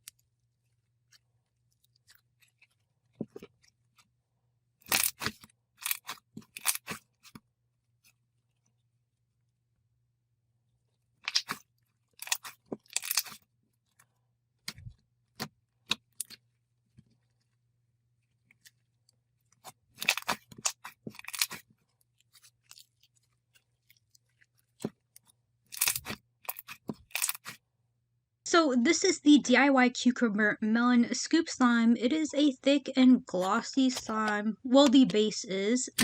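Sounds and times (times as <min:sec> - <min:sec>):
crackling crunchy handling noises: 0:00.0 - 0:04.2, 0:04.8 - 0:08.8, 0:11.1 - 0:27.6.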